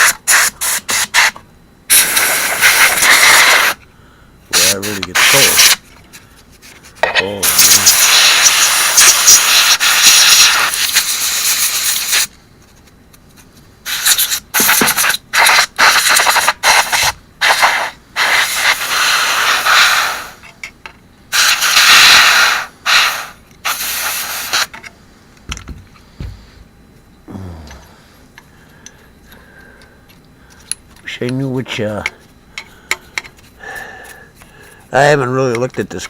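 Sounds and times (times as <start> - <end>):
compressed air duster spraying: 0.0 - 3.8, 4.5 - 5.8, 7.4 - 12.3, 13.8 - 20.4, 21.3 - 24.8.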